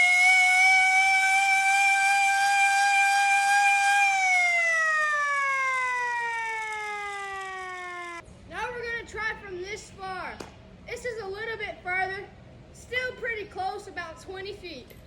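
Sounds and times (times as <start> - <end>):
hand-crank siren wailing: 0.0 - 8.2.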